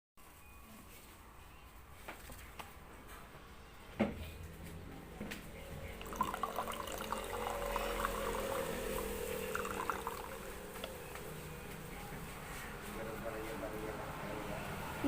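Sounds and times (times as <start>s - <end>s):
liquid pouring into container: 5.9s - 11.1s.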